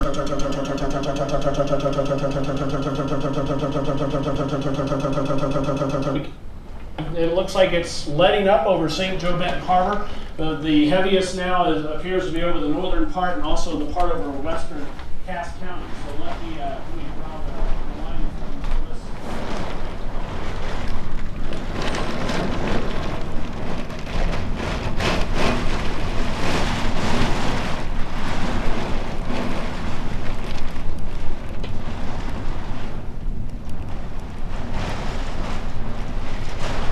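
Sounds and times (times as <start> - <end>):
loud fluttering electrical buzz: 0.0 - 6.2
heavy rain pouring: 0.0 - 6.4, 7.1 - 36.9
gusting wind: 14.6 - 36.9.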